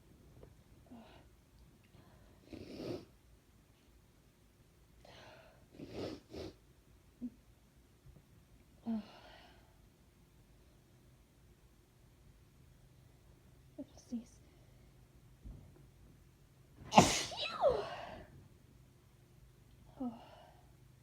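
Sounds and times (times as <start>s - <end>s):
quiet breaths: 0.8s - 4.0s, 5.0s - 6.6s, 8.6s - 11.3s, 12.8s - 15.4s, 19.7s - 21.0s
woman sneezing: 16.9s - 18.2s.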